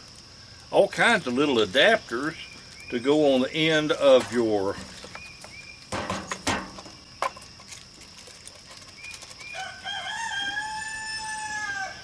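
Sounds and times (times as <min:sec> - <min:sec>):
sharp clicks and knocks: 0:04.1 - 0:07.5
rooster crowing: 0:09.5 - 0:12.0.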